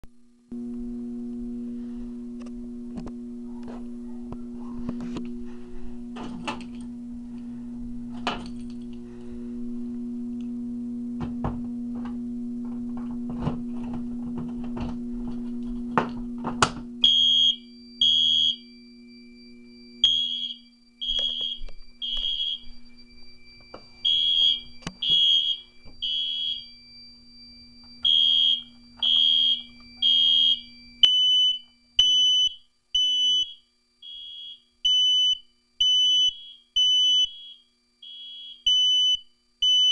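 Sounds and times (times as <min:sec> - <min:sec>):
low hum: 0:00.1 - 0:32.1
lower-pitched alarm beeping: 0:16.9 - 0:39.9
smoke alarm beeping: 0:17.0 - 0:39.9.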